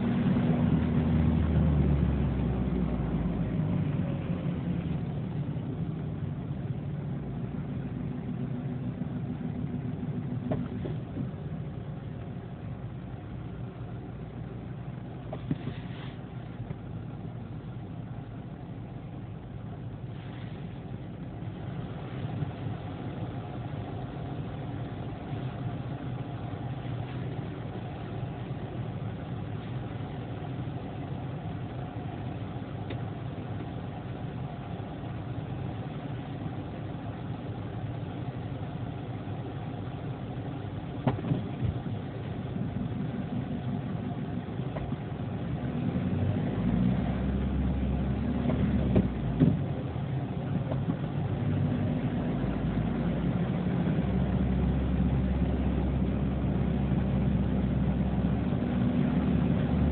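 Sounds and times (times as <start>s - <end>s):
vehicle engine and road hum: 0.0s - 59.9s.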